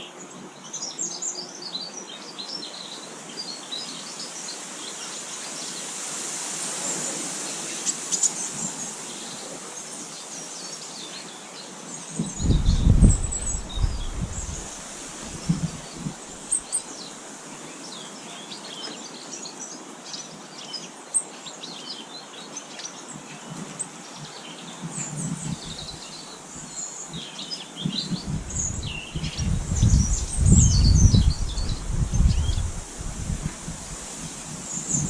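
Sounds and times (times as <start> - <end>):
small birds chirping: 6.9 - 35.0.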